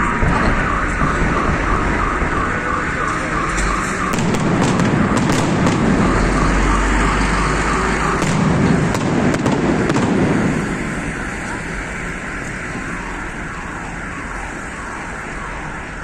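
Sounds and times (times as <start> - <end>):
low rumble of explosions: 0.0 - 7.1, 7.7 - 15.9
wavering alarm-like tone: 0.0 - 16.0
fireworks crackling and popping: 2.9 - 7.2, 7.8 - 13.7.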